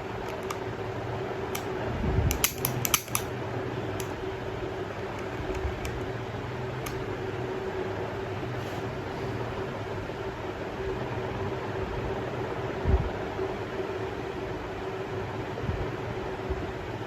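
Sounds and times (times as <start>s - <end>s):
steady hum: 0.0s - 17.0s
pistol parts clicking: 0.2s - 0.6s, 2.3s - 3.3s, 4.0s - 4.2s, 5.1s - 6.1s.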